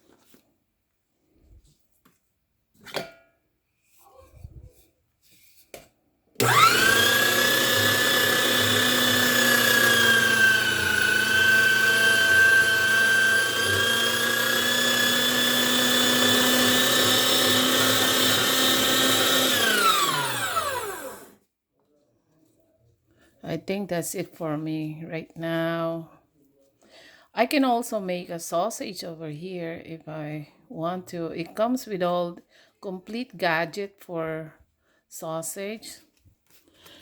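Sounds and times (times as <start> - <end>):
meat grinder motor whining: 6.4 - 21.4.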